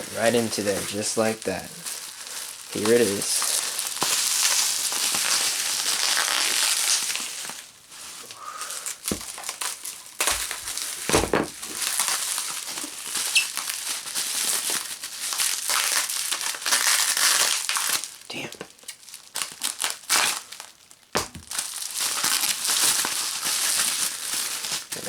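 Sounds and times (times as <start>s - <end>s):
packing material crinkling: 0.0s - 25.0s
handling knocks: 9.1s - 9.4s, 10.3s - 11.8s.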